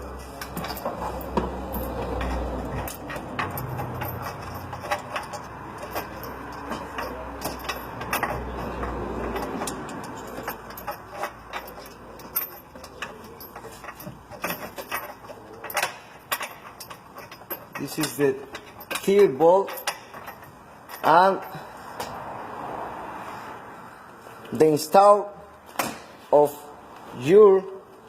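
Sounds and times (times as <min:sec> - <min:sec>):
metal tools clinking: 0:00.0 - 0:21.9.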